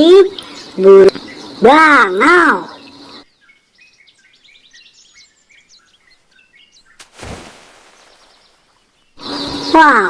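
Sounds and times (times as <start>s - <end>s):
bird chirping and twittering: 0.0s - 10.0s
short rushing hiss: 7.0s - 8.6s.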